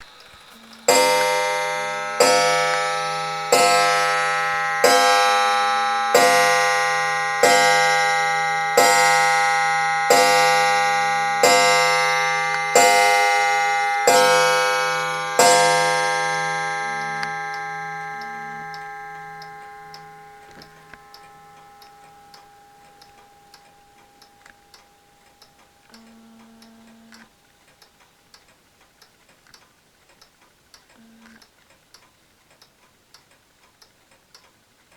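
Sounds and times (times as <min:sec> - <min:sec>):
clock bell striking: 0:00.0 - 0:25.8
faint clock ticking: 0:00.0 - 0:34.9.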